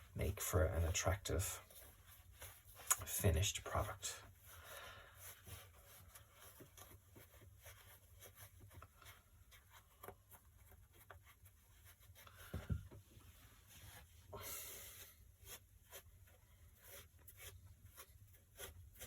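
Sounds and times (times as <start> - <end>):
scratchy rustling of wadding: 0.0 - 19.0
soft low thump: 12.5 - 13.0.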